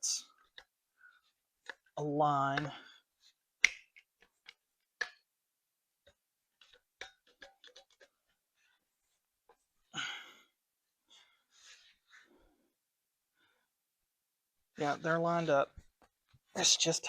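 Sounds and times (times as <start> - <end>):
person exhaling: 9.9 - 10.5.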